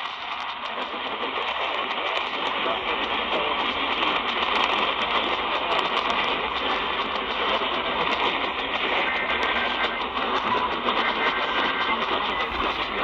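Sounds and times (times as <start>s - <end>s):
radio static hiss: 1.8s - 13.0s.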